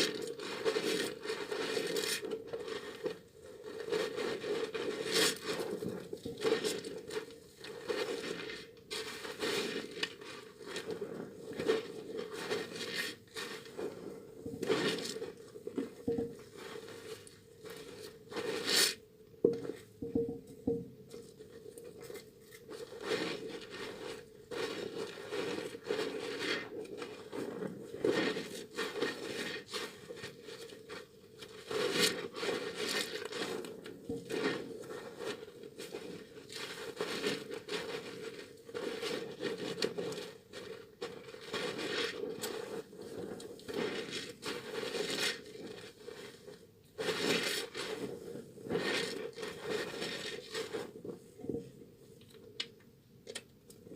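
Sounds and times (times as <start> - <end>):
soap lather squishing: 5.2 - 20.3.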